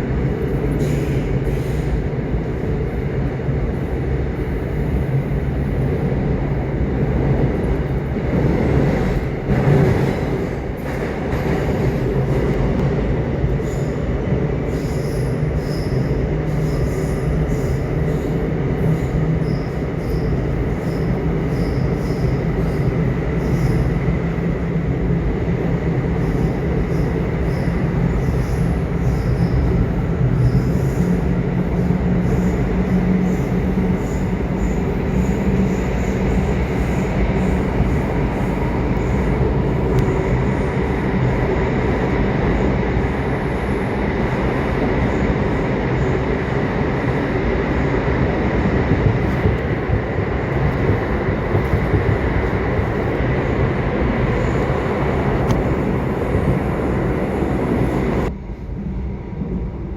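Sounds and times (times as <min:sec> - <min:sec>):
train wheels rumbling on track: 0:00.0 - 0:59.9.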